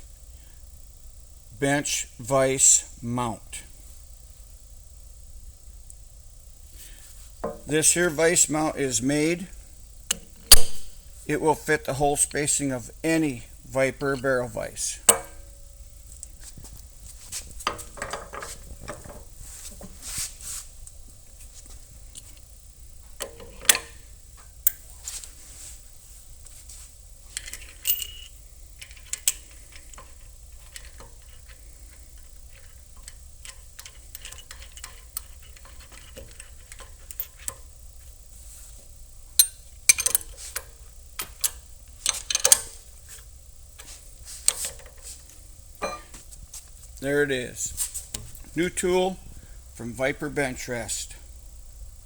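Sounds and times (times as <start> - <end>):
metal clinks and knocks: 17.6 - 19.3, 27.3 - 31.6, 32.2 - 37.7, 39.4 - 42.8, 45.8 - 46.2.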